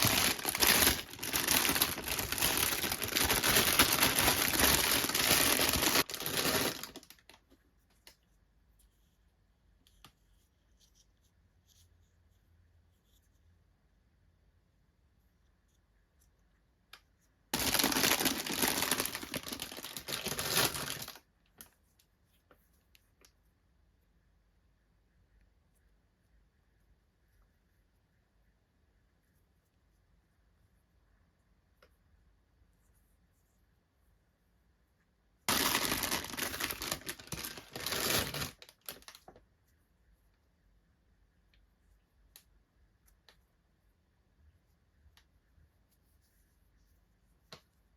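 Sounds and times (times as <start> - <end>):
packaging crinkling and tearing: 0.0 - 7.4, 17.6 - 21.2, 35.5 - 39.4.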